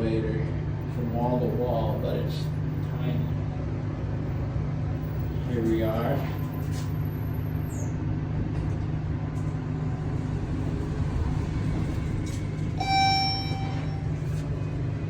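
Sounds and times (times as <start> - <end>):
elevator low hum: 0.0 - 15.0
electronic chime: 12.8 - 14.2.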